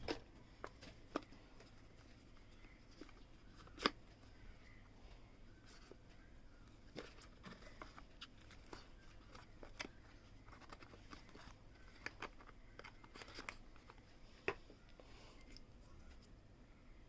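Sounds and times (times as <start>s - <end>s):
box handling clicks and rustles: 6.8s - 14.6s.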